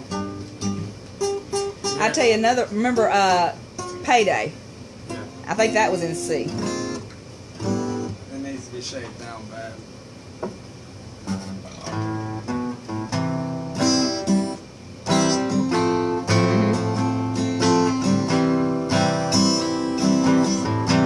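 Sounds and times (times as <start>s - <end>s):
acoustic guitar strumming chords: 0.0s - 9.4s, 11.2s - 21.0s.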